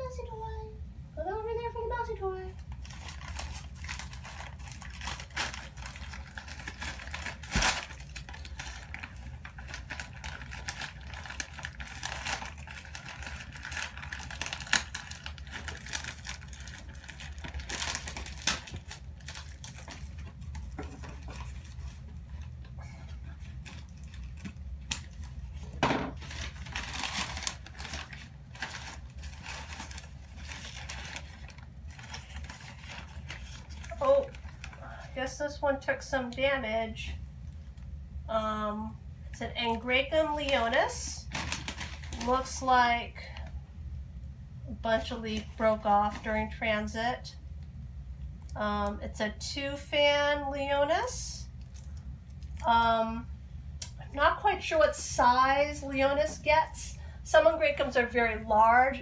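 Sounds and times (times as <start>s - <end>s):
steady low hum: 0.0s - 59.0s
packaging rustling and crinkling: 2.6s - 35.1s, 40.4s - 42.6s.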